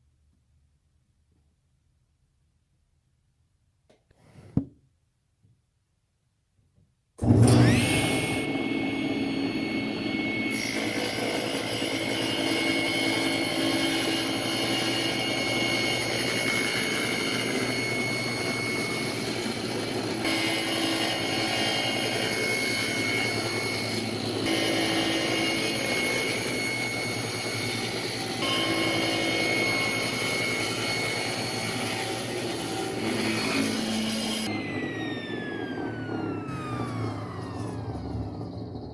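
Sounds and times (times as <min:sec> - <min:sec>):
power saw whining: 0:07.2 - 0:38.9.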